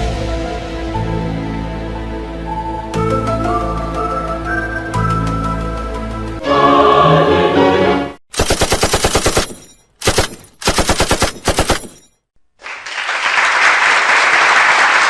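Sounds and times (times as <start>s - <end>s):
automatic gunfire bursts: 8.3s - 11.9s.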